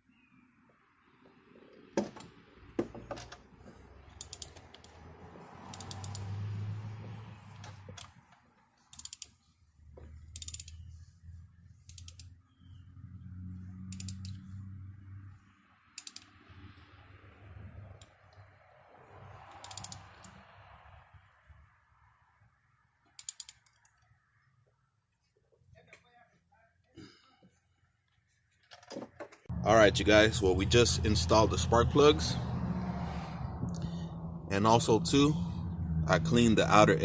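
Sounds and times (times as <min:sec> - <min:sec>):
socket ratchet clicking: 0:04.2 - 0:05.0, 0:05.7 - 0:06.4, 0:08.9 - 0:09.4, 0:10.3 - 0:10.9, 0:11.9 - 0:12.3, 0:13.9 - 0:14.4, 0:16.0 - 0:16.4, 0:19.5 - 0:20.4, 0:23.2 - 0:24.0.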